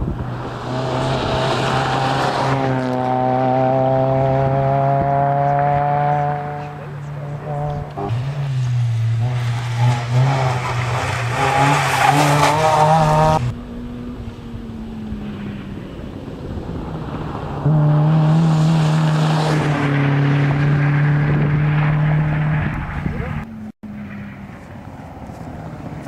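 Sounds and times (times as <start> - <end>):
rally car engine at full throttle: 0.0 - 26.0.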